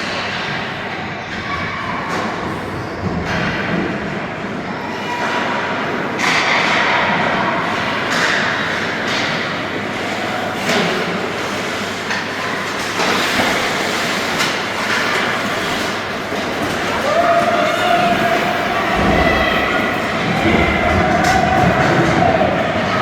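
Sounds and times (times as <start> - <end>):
skate blades scraping ice: 7.8 - 22.1
hockey sticks and puck knocking: 8.1 - 22.5.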